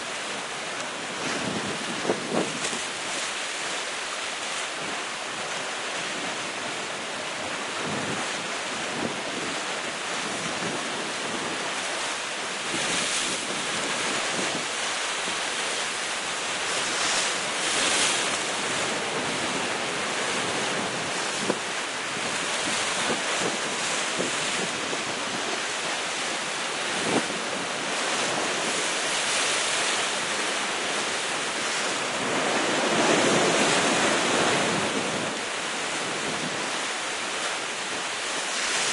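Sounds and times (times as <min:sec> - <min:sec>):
sea waves breaking on rocks: 0:00.0 - 0:38.9
wind buffeting microphone: 0:01.1 - 0:03.1, 0:16.7 - 0:36.7.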